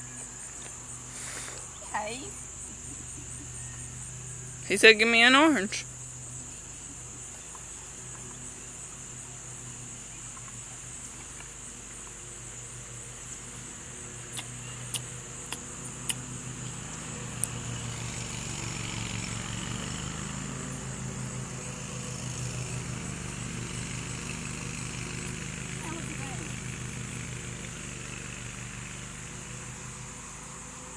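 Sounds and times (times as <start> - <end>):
low motor hum: 10.4 - 30.9
sharp clicks: 14.3 - 16.3.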